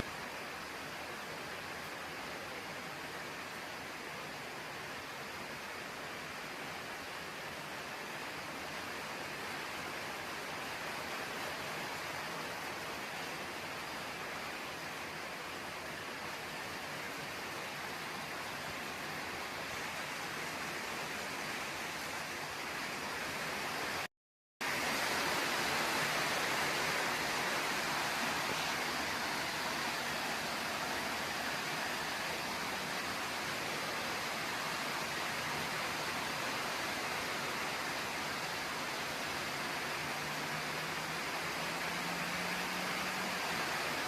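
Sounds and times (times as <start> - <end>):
heavy rain hissing: 0.0 - 44.0.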